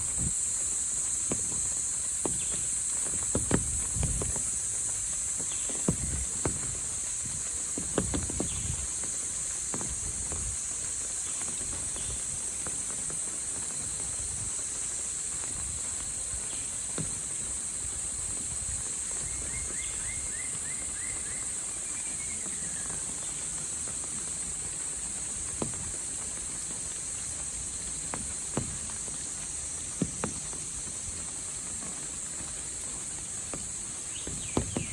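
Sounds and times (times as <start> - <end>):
footsteps tapping: 0.0 - 11.9, 22.6 - 34.9
high-pitched insect chorus: 0.0 - 34.9.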